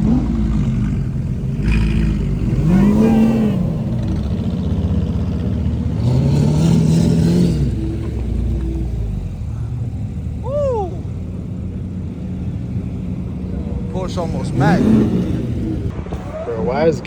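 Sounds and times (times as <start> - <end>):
car engine revving: 0.0 - 16.0
low engine rumble: 0.0 - 16.0.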